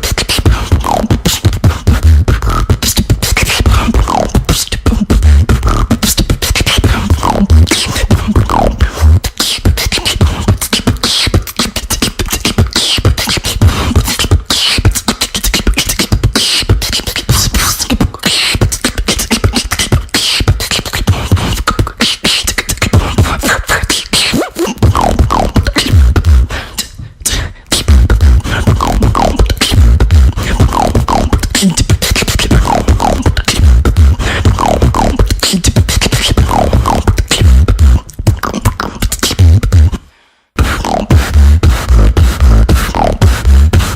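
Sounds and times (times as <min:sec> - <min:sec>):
person beatboxing: 0:00.0 - 0:43.9.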